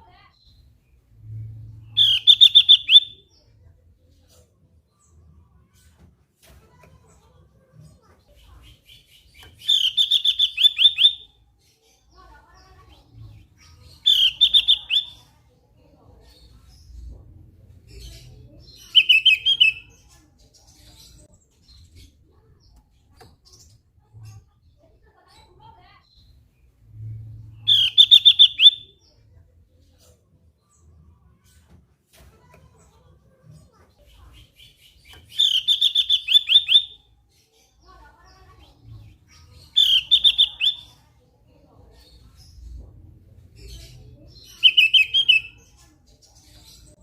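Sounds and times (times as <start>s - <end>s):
faint bird chirps: 0.3s - 6.0s, 7.2s - 17.2s, 17.8s - 31.6s, 33.3s - 42.8s, 43.4s - 47.0s
bird singing high notes: 2.0s - 3.2s.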